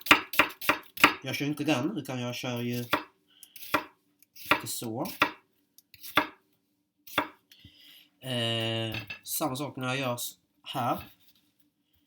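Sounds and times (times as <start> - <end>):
knife chopping on cutting board: 0.0 - 1.2, 2.7 - 5.4, 6.0 - 6.4, 7.1 - 7.4.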